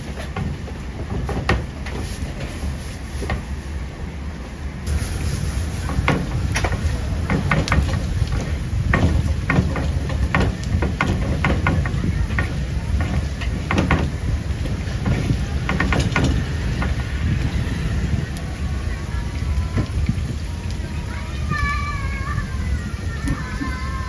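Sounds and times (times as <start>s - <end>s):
kitchen clacks and knocks: 5.9s - 17.0s.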